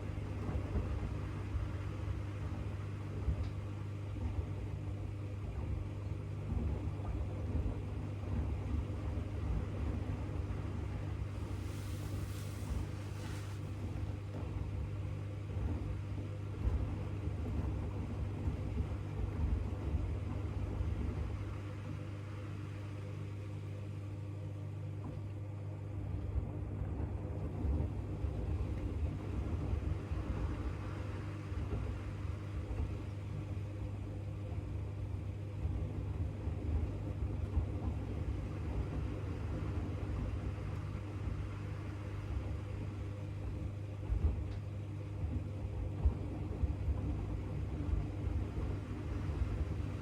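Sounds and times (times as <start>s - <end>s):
washing machine motor hum: 0.0s - 50.0s.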